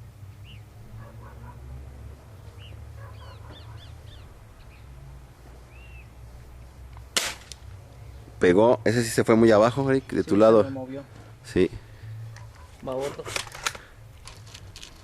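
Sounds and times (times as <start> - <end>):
birds calling: 0.3 - 8.4, 9.0 - 14.0.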